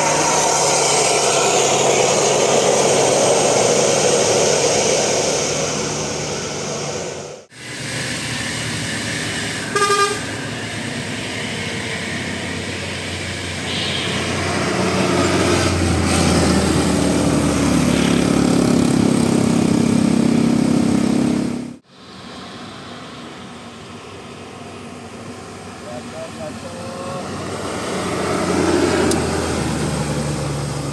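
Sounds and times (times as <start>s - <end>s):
heavy bus engine: 0.0s - 30.9s
loud horn blast: 9.6s - 10.5s.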